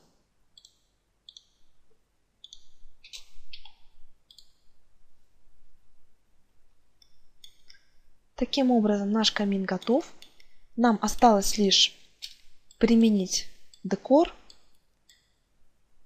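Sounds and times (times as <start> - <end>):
computer mouse clicking: 0.6 - 1.6, 2.4 - 4.6, 7.4 - 7.8.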